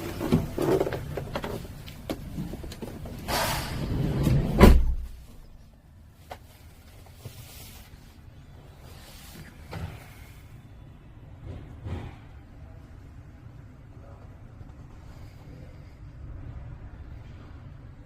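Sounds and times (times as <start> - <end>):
door sliding and slamming: 3.2 - 5.2.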